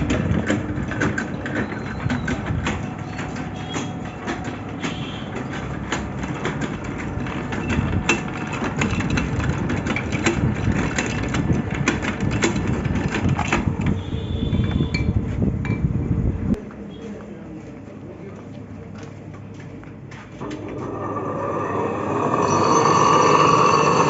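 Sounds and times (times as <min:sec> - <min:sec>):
sharp clicks and rattles: 0:00.0 - 0:14.0.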